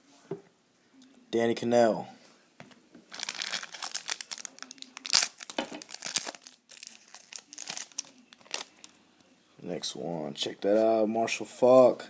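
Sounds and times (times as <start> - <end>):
wrapper crinkling: 3.1 - 9.0.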